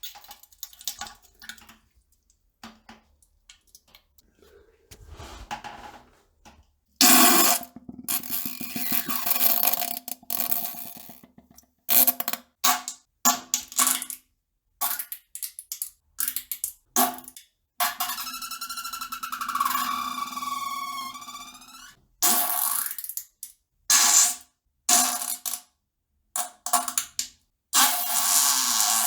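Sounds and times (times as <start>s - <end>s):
farts: 4.3s - 6.2s, 7.0s - 11.4s, 19.2s - 22.0s.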